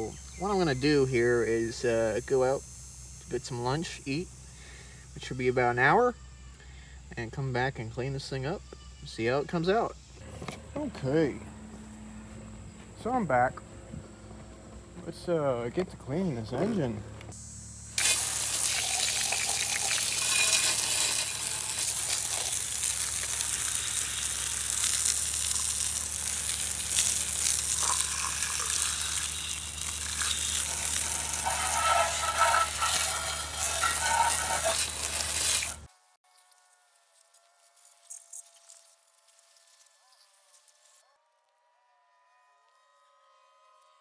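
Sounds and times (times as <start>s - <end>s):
hose water spraying on metal: 17.9s - 35.9s.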